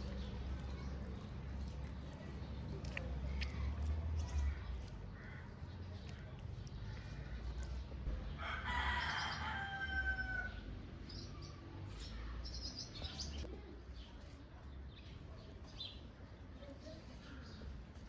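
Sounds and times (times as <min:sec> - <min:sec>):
small birds chirping: 0:00.0 - 0:08.2, 0:10.5 - 0:18.0
rooster crowing: 0:08.4 - 0:10.5.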